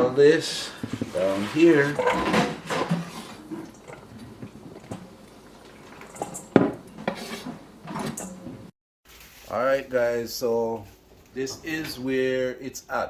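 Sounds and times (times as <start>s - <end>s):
dishes clattering on a counter: 1.9s - 5.0s, 5.8s - 8.5s.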